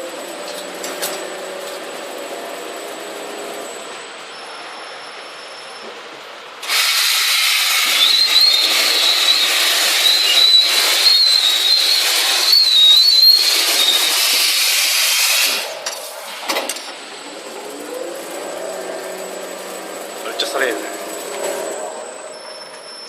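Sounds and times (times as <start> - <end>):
machine hum: 0.0 - 4.2, 15.4 - 23.0
cutter scraping metal: 6.6 - 16.7
high squeal of tool on metal: 6.8 - 15.8, 18.5 - 23.0.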